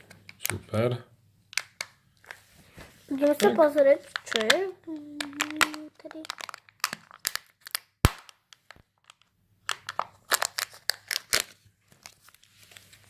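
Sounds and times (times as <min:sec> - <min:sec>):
plastic clicks and crinkles: 0:00.0 - 0:00.8, 0:01.5 - 0:02.4, 0:03.2 - 0:13.0
plastic capsule snapping open: 0:01.5 - 0:02.4, 0:04.1 - 0:11.6.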